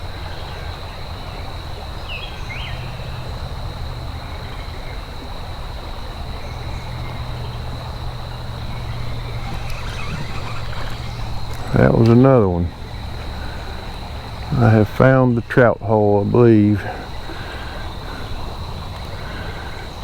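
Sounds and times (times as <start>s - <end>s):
creek water running: 5.3s - 20.0s
high-pitched insect drone: 8.0s - 13.2s
short bird chirps: 8.9s - 11.8s.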